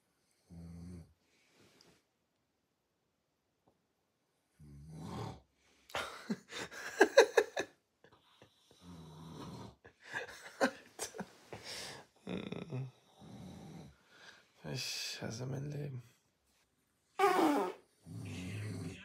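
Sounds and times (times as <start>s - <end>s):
man snoring loudly: 4.6s - 5.4s, 17.2s - 19.0s.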